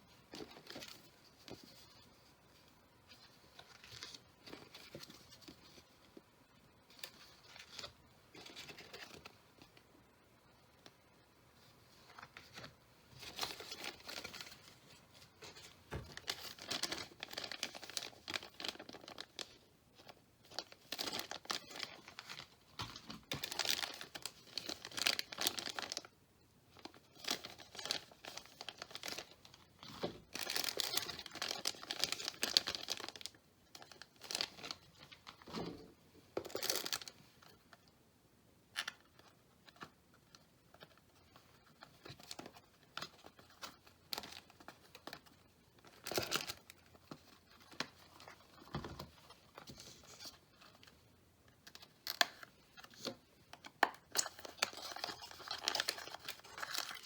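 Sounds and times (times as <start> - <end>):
packaging crinkling and tearing: 15.9 - 19.6, 20.5 - 26.1, 30.2 - 35.2, 45.8 - 46.9, 51.7 - 57.0.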